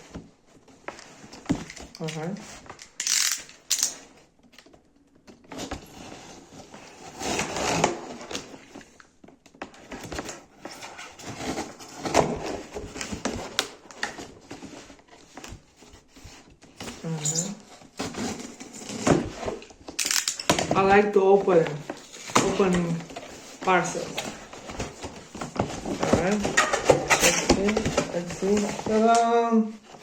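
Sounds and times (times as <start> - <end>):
handling clicks and knocks: 1.4 - 4.0.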